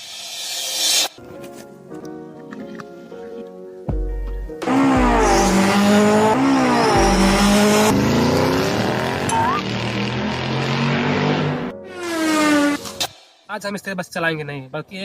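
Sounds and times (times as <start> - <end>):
racing car engine revving: 4.6 - 13.0.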